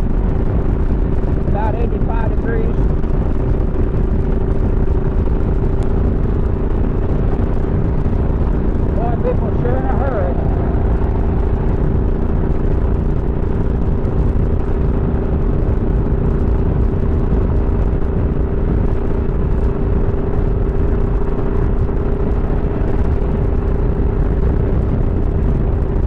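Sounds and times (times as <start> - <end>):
motorcycle engine running: 0.0 - 26.0
wind rushing over microphone: 0.0 - 26.0.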